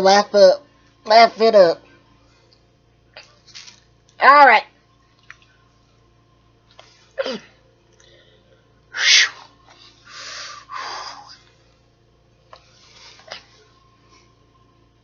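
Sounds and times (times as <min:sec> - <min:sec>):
sharp burst of breath: 0:10.0 - 0:11.3.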